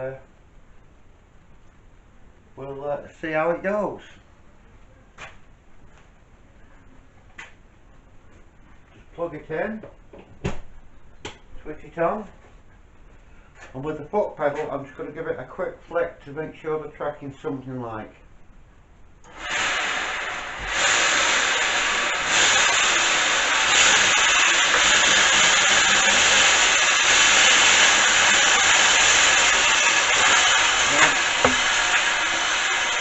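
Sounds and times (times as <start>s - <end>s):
belt sander running: 19.3s - 33.0s.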